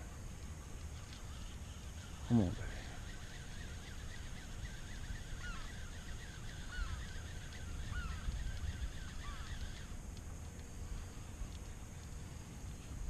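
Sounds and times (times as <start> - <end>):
birds chirping: 1.2 - 10.0
loud arched bird calls: 1.2 - 10.0.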